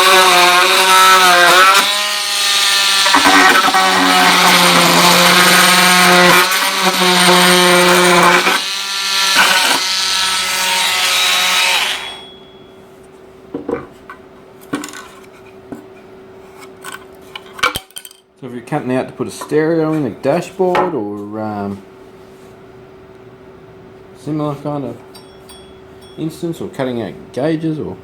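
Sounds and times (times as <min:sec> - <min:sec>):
multi-tool buzzing through plastic: 0:00.0 - 0:12.3.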